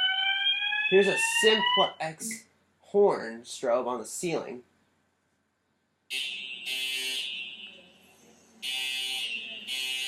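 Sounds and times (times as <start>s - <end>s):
fire alarm horn buzzing: 6.1s - 7.8s, 8.6s - 10.0s.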